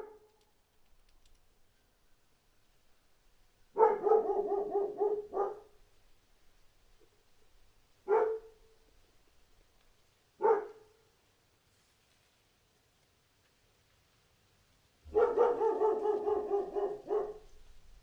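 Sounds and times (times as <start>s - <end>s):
dog barking: 0.0s - 0.2s, 3.7s - 5.8s, 8.0s - 8.7s, 10.4s - 11.0s, 15.1s - 17.6s.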